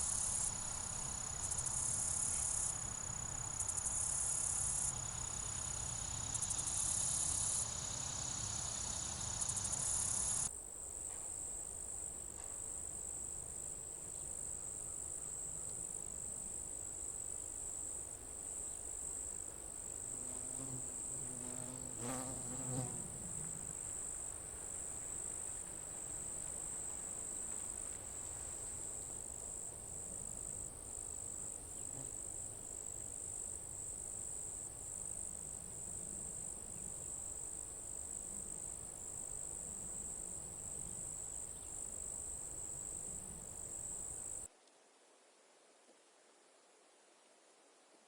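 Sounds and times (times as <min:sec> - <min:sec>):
insect chorus trilling: 0:00.0 - 0:10.5.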